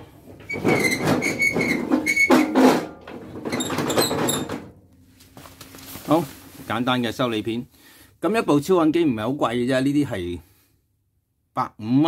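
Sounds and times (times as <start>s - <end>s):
metal scraping on metal: 0.4s - 2.8s.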